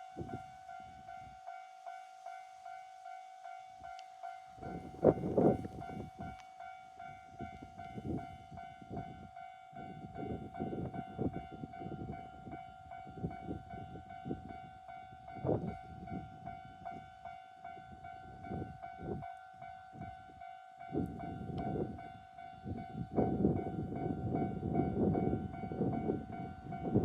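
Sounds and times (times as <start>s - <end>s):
diesel railcar rumble and clatter: 0.0s - 27.0s.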